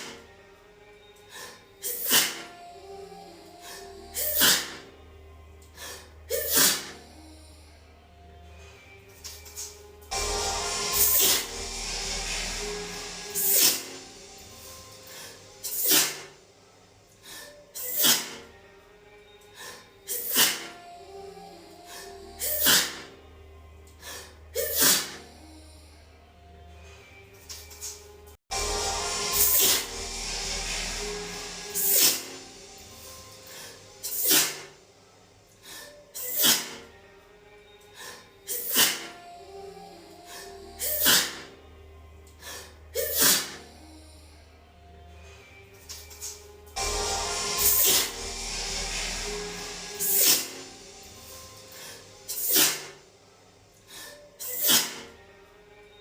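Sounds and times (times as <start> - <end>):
woman sneezing: 6.3 - 7.0, 17.8 - 18.4, 24.6 - 25.2, 34.1 - 34.7, 43.0 - 43.6.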